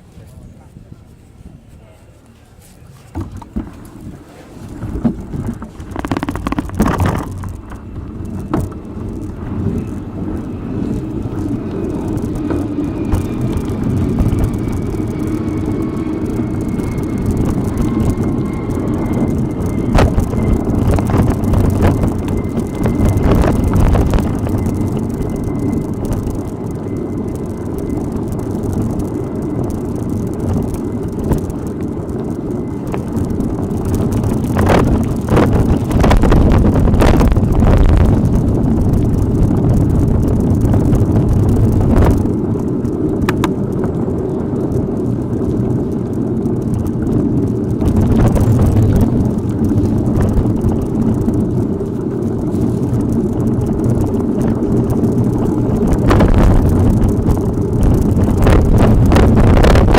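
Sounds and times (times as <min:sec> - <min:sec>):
tyres rumbling on rough track: 0:00.0 - 0:59.9
wind on microphone: 0:00.0 - 0:59.9
bike knocks and rattles: 0:03.0 - 0:14.8, 0:29.6 - 0:44.0.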